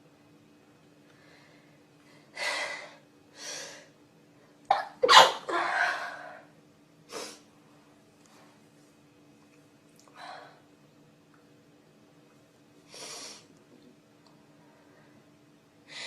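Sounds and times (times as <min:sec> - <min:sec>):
person sneezing: 0:04.7 - 0:06.1.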